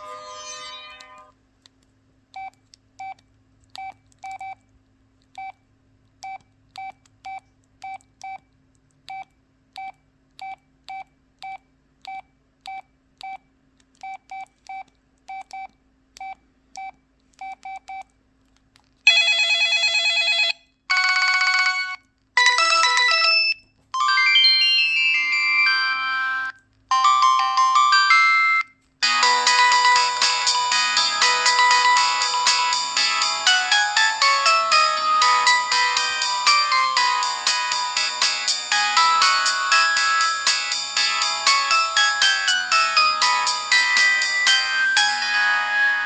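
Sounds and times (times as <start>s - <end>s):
polyphonic ringtone chords: 0.0s - 1.3s, 21.0s - 46.0s.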